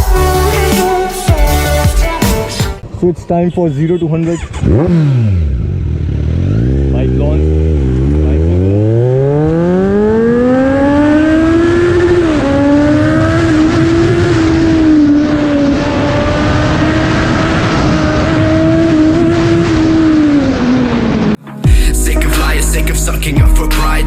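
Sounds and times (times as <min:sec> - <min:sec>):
motorcycle engine accelerating hard: 0:04.3 - 0:21.4.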